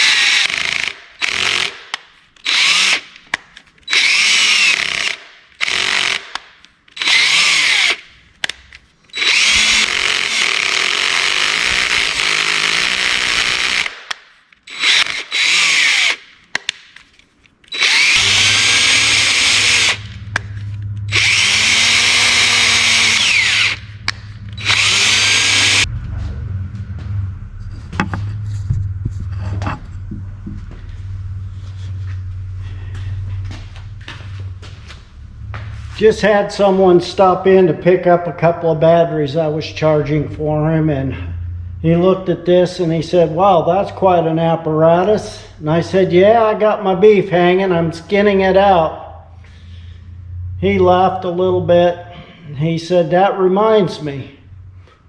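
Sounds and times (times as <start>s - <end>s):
power drill drilling metal: 0.0s - 3.2s, 3.9s - 6.4s, 7.0s - 8.1s, 9.1s - 16.3s, 17.7s - 25.9s
low steady hum: 16.4s - 55.0s.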